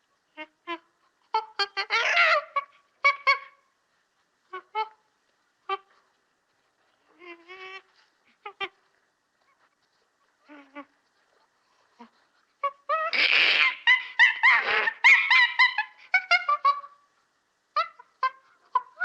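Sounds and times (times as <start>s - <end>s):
monkey hoots and calls: 0.4s - 3.6s, 11.9s - 17.0s
monkey warbling chatter: 12.0s - 16.7s
monkey screech: 13.0s - 15.6s.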